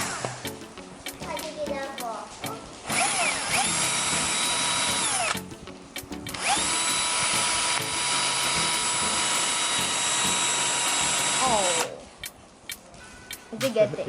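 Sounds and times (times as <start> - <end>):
electric drill whining: 2.9 - 5.4, 6.4 - 12.0.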